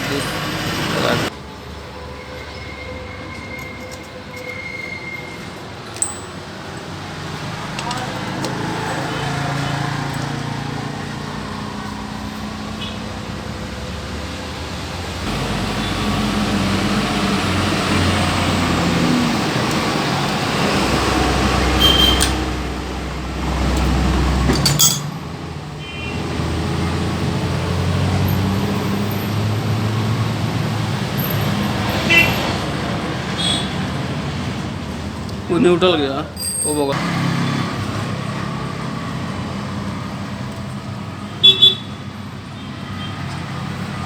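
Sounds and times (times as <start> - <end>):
sharp metallic clinks: 5.9 - 6.9, 24.6 - 25.1, 36.4 - 37.0
engine running unevenly: 15.1 - 25.4.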